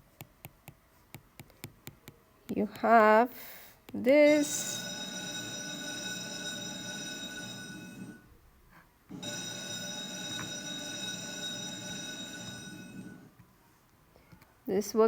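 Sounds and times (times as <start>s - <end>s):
telephone ringing: 4.2s - 8.4s, 9.1s - 13.4s.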